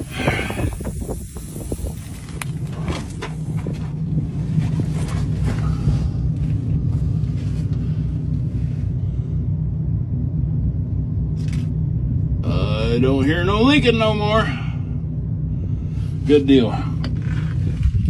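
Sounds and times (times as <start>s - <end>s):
tool scraping and hissing: 0.0s - 3.7s
truck engine idling: 0.0s - 17.8s.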